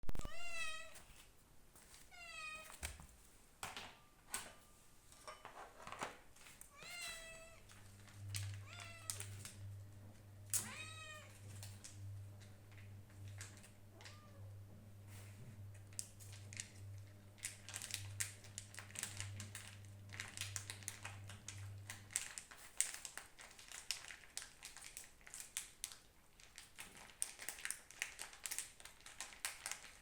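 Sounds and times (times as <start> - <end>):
cat meowing: 0.1 - 1.0, 2.1 - 2.8, 6.7 - 7.6, 8.6 - 9.4, 10.6 - 11.4, 13.9 - 14.6
low steady hum: 2.9 - 22.4.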